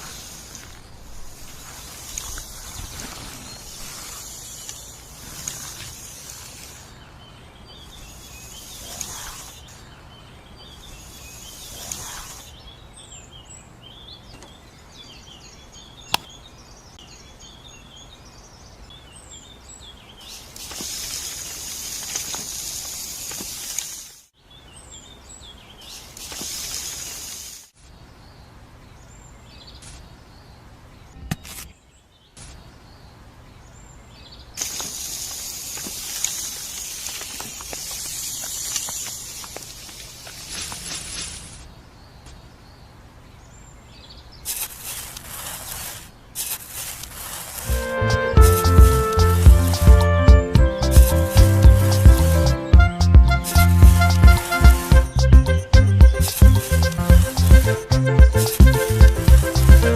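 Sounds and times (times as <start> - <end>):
bursts of hiss: 0.0 - 7.0, 8.0 - 9.8, 11.0 - 12.5, 20.3 - 24.3, 25.9 - 27.8, 34.6 - 41.7, 44.4 - 59.9
small birds chirping: 0.0 - 59.9
sharp click: 16.1 - 16.4.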